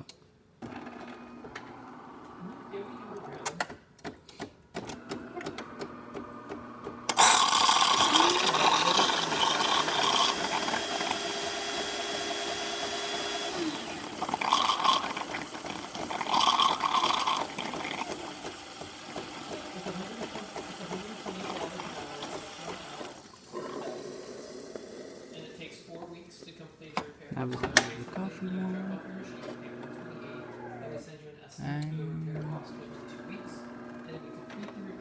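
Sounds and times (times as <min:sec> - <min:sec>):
espresso machine pump buzzing: 0:00.6 - 0:03.4, 0:05.0 - 0:26.0, 0:27.6 - 0:31.0, 0:32.3 - 0:35.0.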